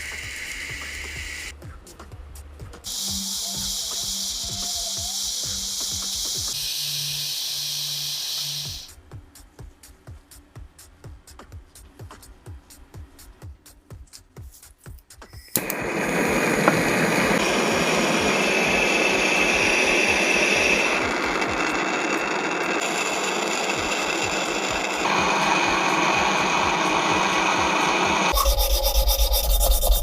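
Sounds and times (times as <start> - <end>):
electric power tool running: 2.9 - 8.9, 15.5 - 29.0.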